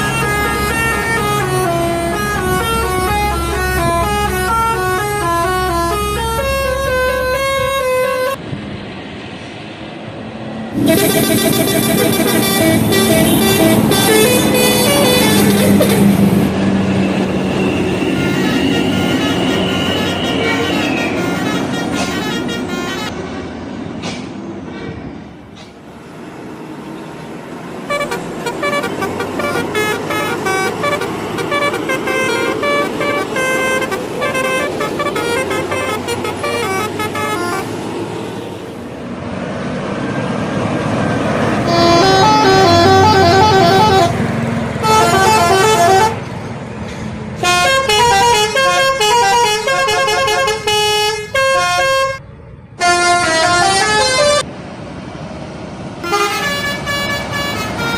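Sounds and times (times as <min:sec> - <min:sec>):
multi-tone bus air horns: 0:00.0 - 0:08.4, 0:10.7 - 0:23.4, 0:27.8 - 0:38.0, 0:41.0 - 0:52.2, 0:52.8 - 0:54.5, 0:56.0 - 0:57.9
bus engine rumble: 0:00.0 - 0:57.9
traffic noise: 0:00.0 - 0:57.9.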